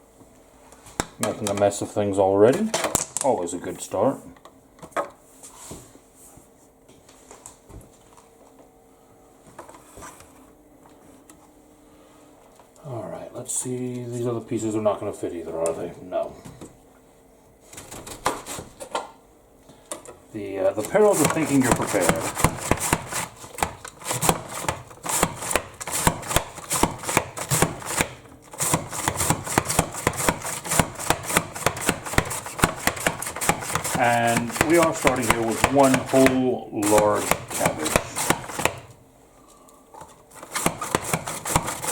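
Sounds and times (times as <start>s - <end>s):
faint steady hum: 0.0s - 41.9s
knife chopping cabbage: 20.8s - 38.9s, 40.3s - 41.9s.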